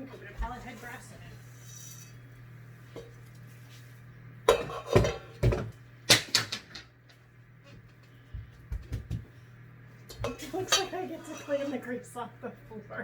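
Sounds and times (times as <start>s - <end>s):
spoons scraping a mixing container: 1.4s - 2.2s.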